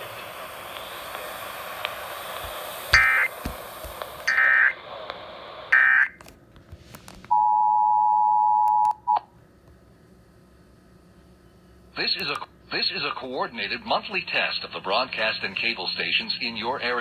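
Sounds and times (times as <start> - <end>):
steady two-tone attention signal: 2.9 - 3.3
warbling digital data bursts: 2.9 - 3.3, 4.3 - 4.7.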